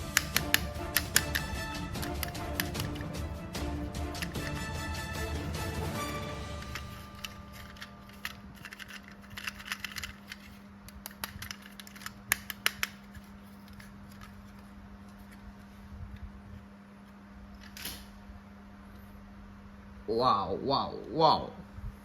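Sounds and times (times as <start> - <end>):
sharp clicks: 0.0 - 3.2
clicks and rustling of packaging: 6.5 - 15.7.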